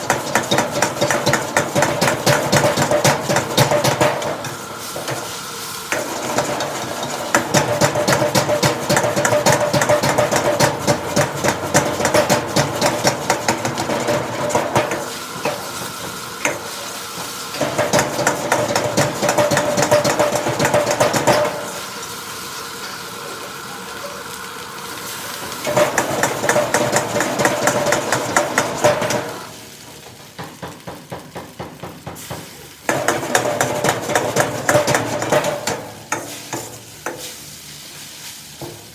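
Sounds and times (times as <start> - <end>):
food sizzling: 0.0 - 38.9
metal spatula scraping a wok: 33.0 - 38.9.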